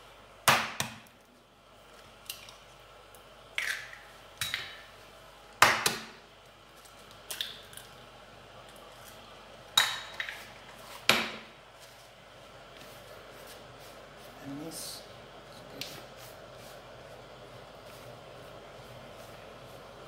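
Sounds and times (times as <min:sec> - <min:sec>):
eggs cracking against a bowl: 0:02.0 - 0:04.8, 0:05.6 - 0:08.0.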